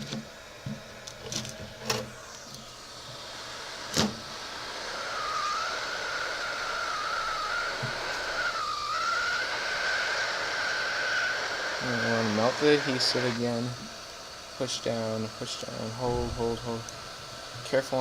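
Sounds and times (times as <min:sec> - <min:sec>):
heat gun blower hissing: 0:00.0 - 0:18.0.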